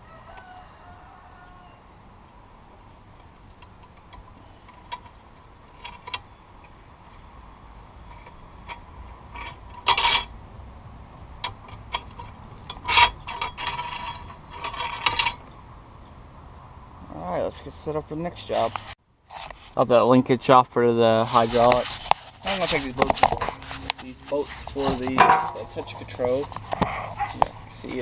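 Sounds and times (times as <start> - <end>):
scraping rasps: 3.1 - 10.4, 11.4 - 15.6, 21.2 - 28.0.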